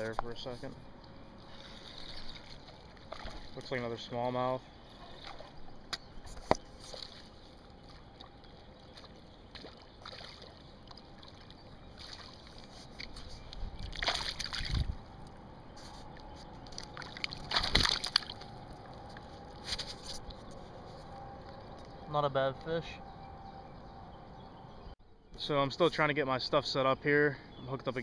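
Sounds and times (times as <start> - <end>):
fish splashing at water surface: 9.0 - 10.6, 13.9 - 14.9, 16.8 - 18.5.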